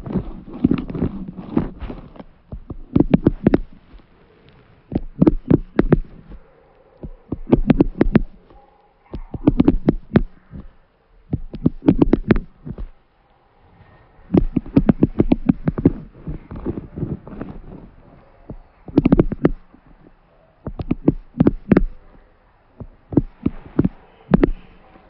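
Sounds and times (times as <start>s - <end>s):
bursts of quick sharp taps: 4.9s - 6.4s, 7.1s - 10.7s, 11.3s - 12.9s, 14.3s - 16.0s, 18.9s - 19.7s, 20.7s - 22.0s.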